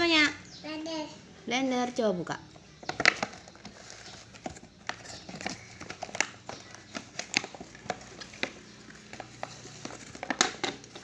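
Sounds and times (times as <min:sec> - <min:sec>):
plastic parts clicking and knocking: 0:02.8 - 0:11.0
rustling: 0:02.8 - 0:11.0.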